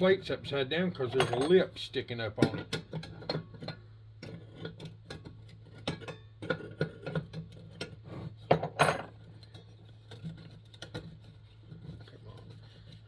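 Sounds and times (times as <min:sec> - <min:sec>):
metal clank: 0:01.1 - 0:01.7.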